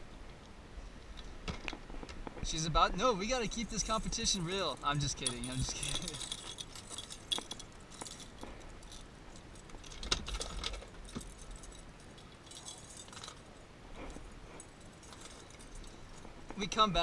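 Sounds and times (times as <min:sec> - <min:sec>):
light clicks and metallic clinks: 0:03.2 - 0:17.0.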